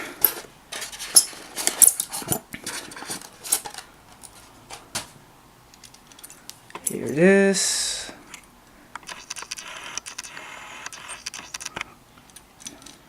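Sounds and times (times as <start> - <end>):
packaging rustling and clicking: 0.2 - 5.1.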